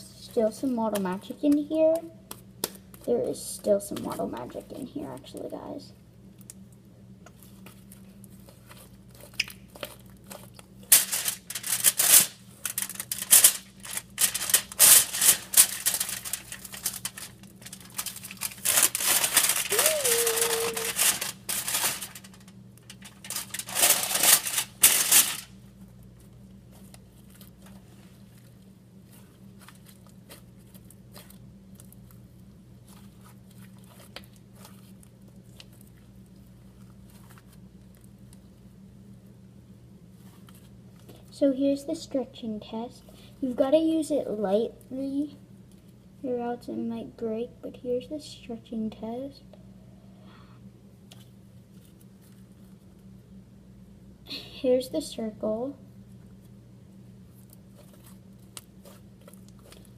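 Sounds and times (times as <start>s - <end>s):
faint handling noise: 7.2s - 32.2s
clay pouch crinkling and tearing: 7.4s - 38.4s, 57.3s - 59.9s.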